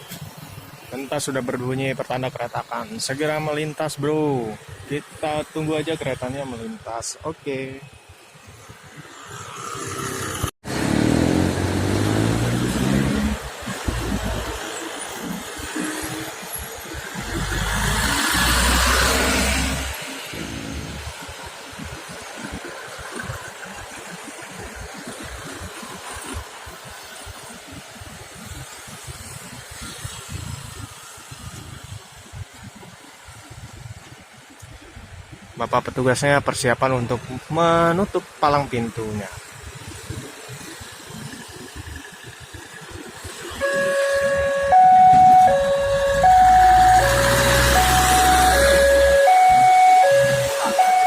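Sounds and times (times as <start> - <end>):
road traffic passing: 7.8 - 33.2, 39.4 - 51.0
level crossing alarm two tones: 43.6 - 51.0.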